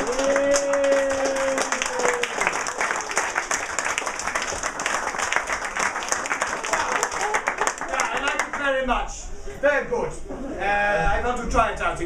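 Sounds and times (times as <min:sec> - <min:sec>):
audience applauding: 0:00.0 - 0:08.8.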